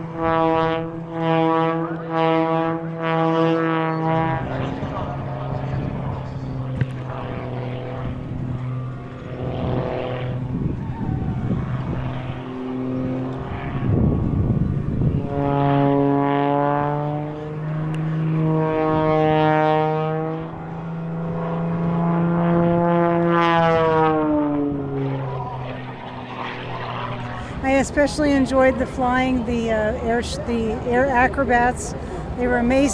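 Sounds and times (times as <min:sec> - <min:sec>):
aircraft engines passing: 0:00.0 - 0:32.9.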